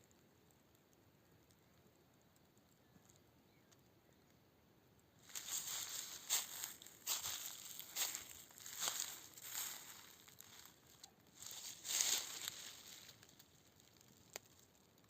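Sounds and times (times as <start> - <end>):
rustling and crunching: 5.2 - 15.0.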